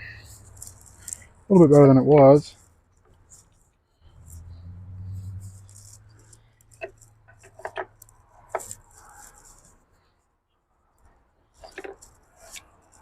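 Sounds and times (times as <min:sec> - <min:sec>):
tools and engine parts clinking: 0:05.4 - 0:09.6, 0:11.5 - 0:13.0.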